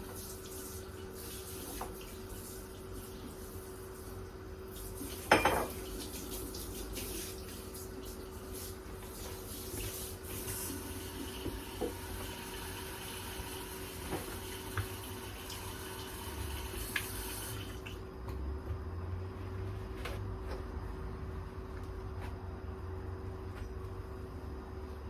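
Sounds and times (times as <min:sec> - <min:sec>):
dishes clattering in sink: 0:05.2 - 0:06.1
tap running into sink: 0:11.3 - 0:12.4, 0:14.0 - 0:15.6.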